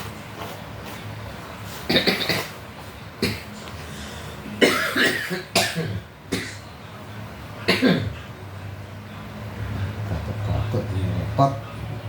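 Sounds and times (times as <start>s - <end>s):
man coughing: 4.6s - 6.6s, 7.7s - 8.2s.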